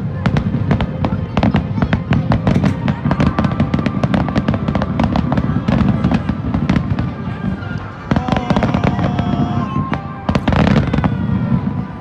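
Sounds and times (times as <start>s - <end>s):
fireworks cracking bursts: 0.0s - 12.0s.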